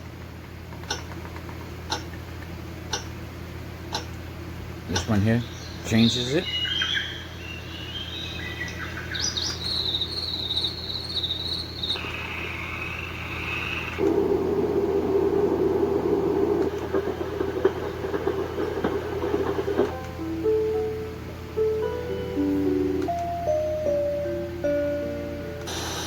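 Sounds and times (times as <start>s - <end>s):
warbling cricket-like chirp: 4.9s - 19.8s
low hiss with clicks: 13.2s - 20.2s
lullaby melody: 19.9s - 26.0s.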